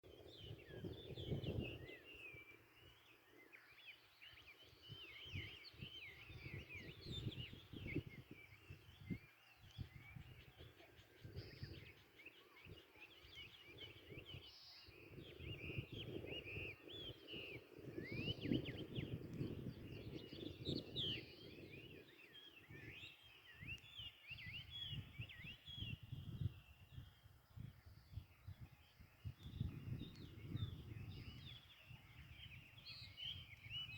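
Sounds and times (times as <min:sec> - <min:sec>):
songbirds chirping and twittering: 0:00.0 - 0:33.9.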